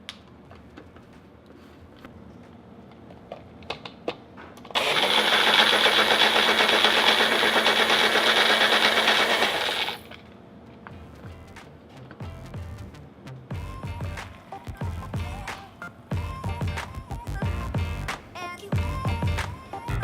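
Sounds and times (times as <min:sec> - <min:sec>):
blender running: 0:04.8 - 0:10.2.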